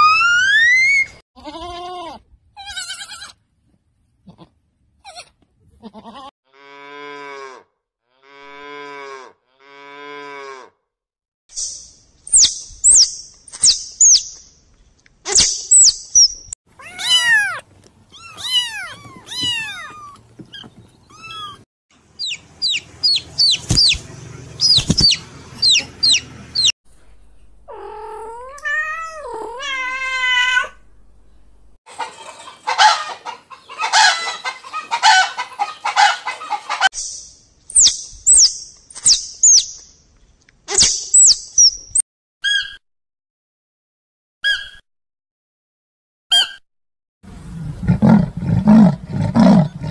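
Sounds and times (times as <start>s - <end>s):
long rising and falling cry: 0.0s - 1.2s
cat meowing: 16.8s - 20.2s, 21.1s - 21.6s, 27.7s - 30.8s
clucking: 31.9s - 36.9s.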